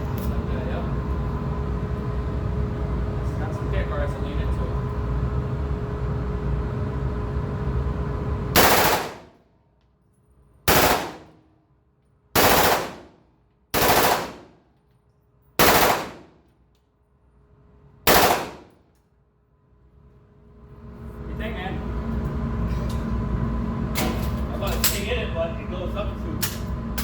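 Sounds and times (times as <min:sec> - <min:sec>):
automatic gunfire bursts: 0:08.6 - 0:09.3, 0:10.7 - 0:11.4, 0:12.4 - 0:13.2, 0:13.8 - 0:14.6, 0:15.6 - 0:16.4, 0:18.1 - 0:18.7.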